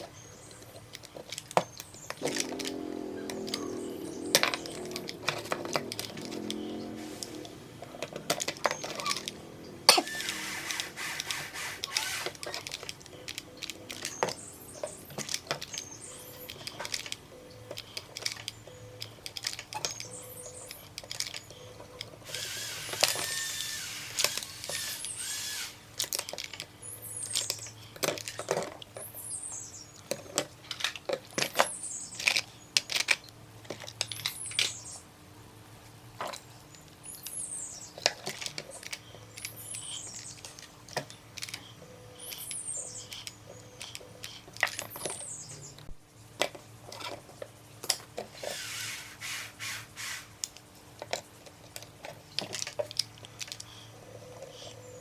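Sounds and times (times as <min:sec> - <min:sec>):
small parts and tools clicking: 0:00.0 - 0:35.1, 0:36.2 - 0:55.0
hissing: 0:02.2 - 0:12.7, 0:48.4 - 0:50.5
brief high squeaks: 0:09.9 - 0:12.4.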